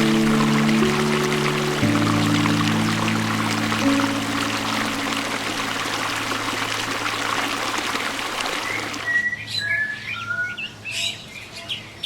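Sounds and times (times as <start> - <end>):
background music: 0.0 - 6.0
water splashing and trickling: 0.0 - 9.3.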